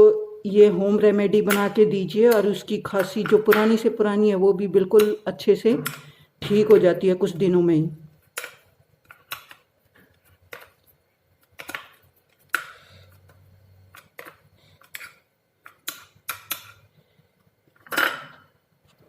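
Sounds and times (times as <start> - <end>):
kitchen utensils clinking: 17.8 - 18.5.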